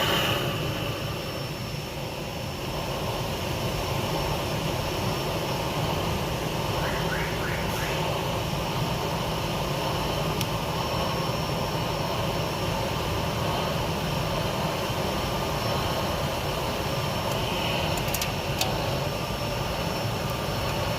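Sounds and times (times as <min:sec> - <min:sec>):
gas torch flame rushing: 0:00.0 - 0:20.9.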